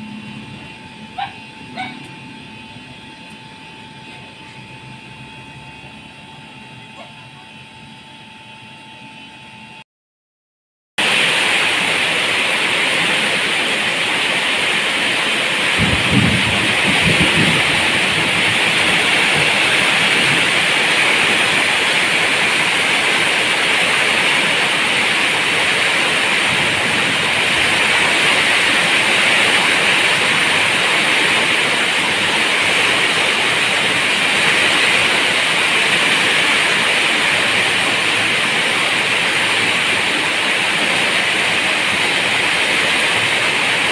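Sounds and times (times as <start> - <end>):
heavy rain: 11.0 - 43.9.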